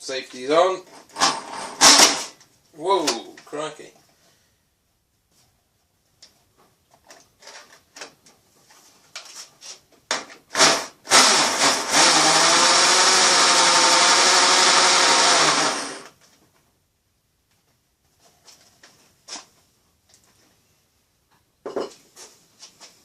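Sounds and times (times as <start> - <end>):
electric drill cutting plastic: 10.6 - 16.2.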